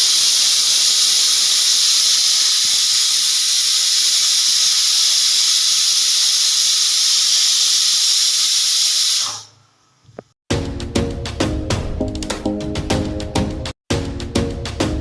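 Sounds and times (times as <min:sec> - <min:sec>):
pressure cooker steam hissing: 0:00.0 - 0:09.6.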